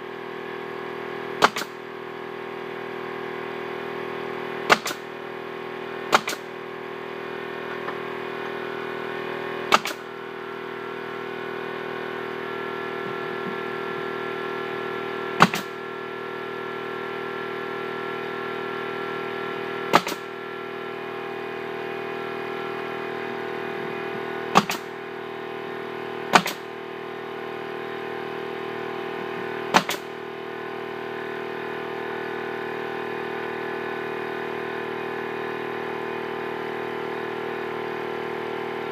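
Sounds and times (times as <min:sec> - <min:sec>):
air compressor drone: 0:00.0 - 0:38.9
pneumatic nail gun firing: 0:01.3 - 0:02.0, 0:04.6 - 0:05.2, 0:06.0 - 0:06.6, 0:09.6 - 0:10.2, 0:15.3 - 0:15.9, 0:19.8 - 0:20.4, 0:24.5 - 0:25.0, 0:26.3 - 0:26.8, 0:29.7 - 0:30.3.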